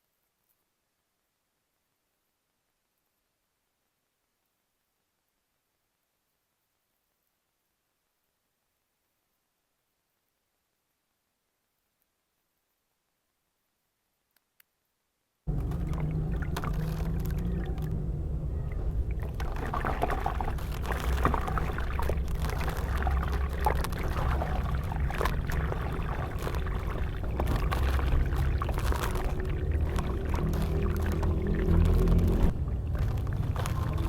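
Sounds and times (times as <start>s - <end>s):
cement crumbling in water: 15.5s - 34.0s
steady low hum: 15.5s - 34.0s.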